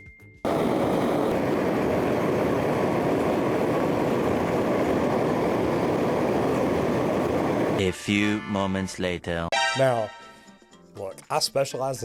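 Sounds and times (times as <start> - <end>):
gas torch roaring: 0.5 - 7.8.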